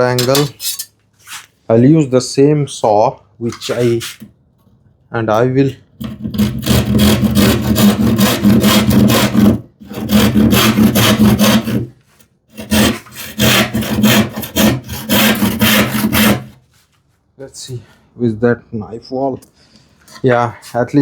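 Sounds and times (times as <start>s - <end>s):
hand saw cutting plywood: 6.0s - 16.6s.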